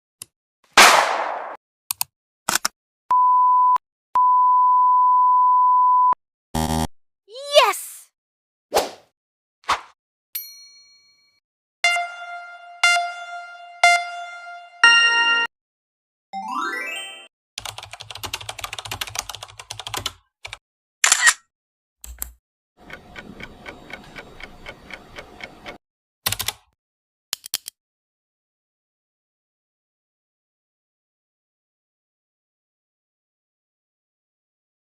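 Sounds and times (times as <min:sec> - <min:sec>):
high censor bleep tone: 0:03.1 - 0:06.2
rapid keyboard typing: 0:17.6 - 0:20.6, 0:22.8 - 0:26.6
single click: 0:21.0 - 0:21.4.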